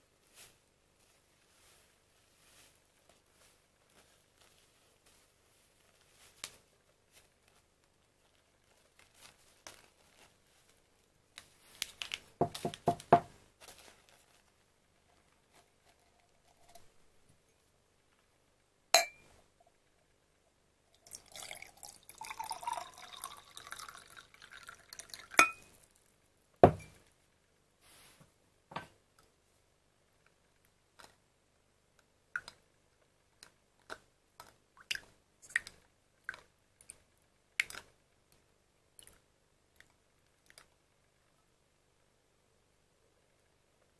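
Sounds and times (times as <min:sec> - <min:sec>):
glass clinking: 0:19.0 - 0:19.3, 0:25.3 - 0:25.7, 0:26.6 - 0:27.0
liquid pouring into glass: 0:21.0 - 0:25.8.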